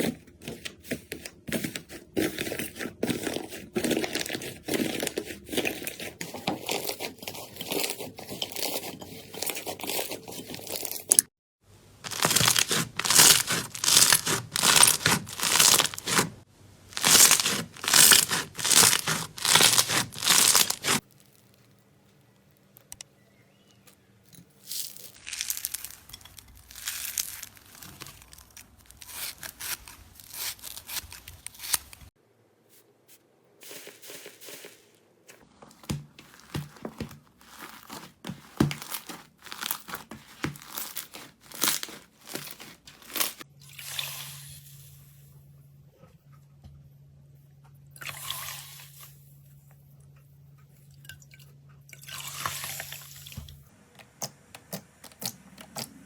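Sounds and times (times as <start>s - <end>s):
slime crackling and popping: 12.0s - 16.3s, 17.0s - 21.8s, 25.1s - 32.0s, 37.4s - 43.4s.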